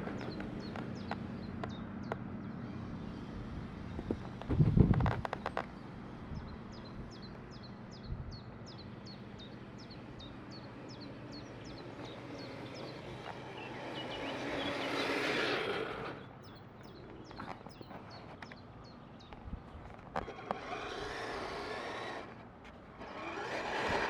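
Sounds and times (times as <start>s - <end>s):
outdoor background noise: 0.0s - 24.0s
bird chirping: 6.4s - 20.8s.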